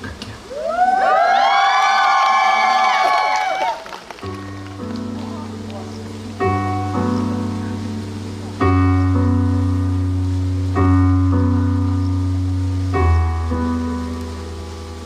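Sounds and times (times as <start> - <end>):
piano playing slow chords: 4.1 - 15.0.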